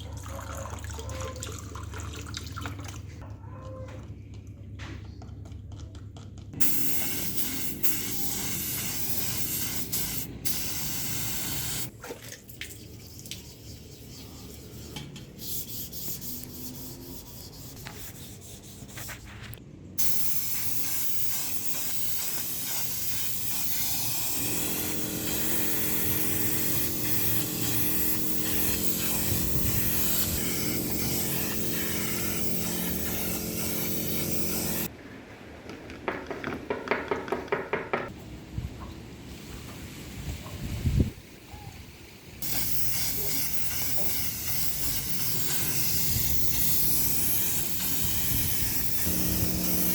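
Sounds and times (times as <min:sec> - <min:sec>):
spray hissing: 0:06.6 - 0:11.9, 0:13.4 - 0:19.3, 0:20.0 - 0:34.9, 0:42.4 - 0:49.9
steady low hum: 0:14.2 - 0:34.9, 0:44.7 - 0:49.9.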